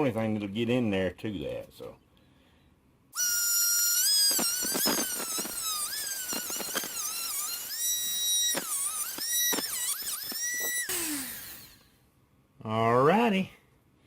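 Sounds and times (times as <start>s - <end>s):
rotary tool cutting screw: 3.2s - 11.9s.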